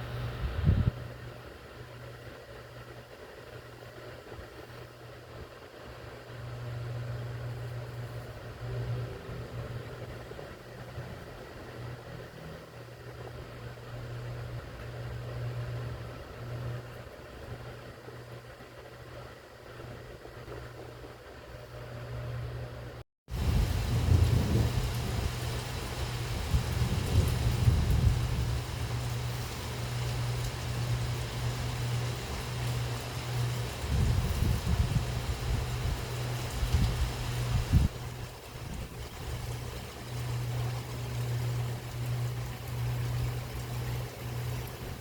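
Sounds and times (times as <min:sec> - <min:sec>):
thunder rumbling: 0:23.3 - 0:43.7
heavy rain: 0:23.3 - 0:45.0
low rumble: 0:23.4 - 0:31.4.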